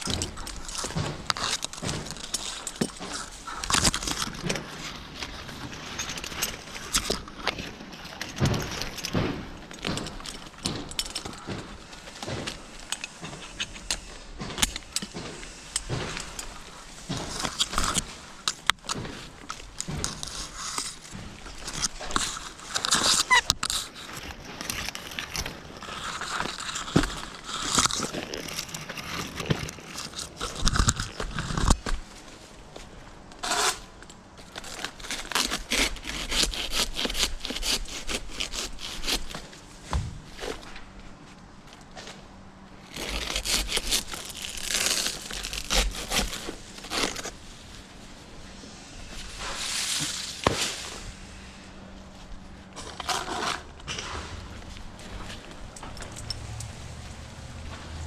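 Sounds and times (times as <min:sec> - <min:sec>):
metal climbing gear clinking: 0:00.0 - 0:32.4, 0:52.7 - 0:56.9
dry palm fronds scraping and rustling: 0:00.0 - 0:41.4, 0:42.0 - 0:55.8.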